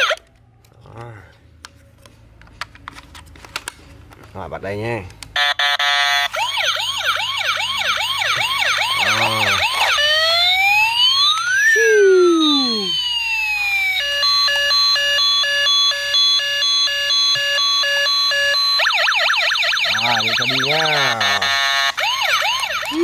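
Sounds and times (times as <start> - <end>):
toy siren sounds: 0.0 - 0.3, 5.4 - 23.0
electronic beeping tones: 19.6 - 21.9.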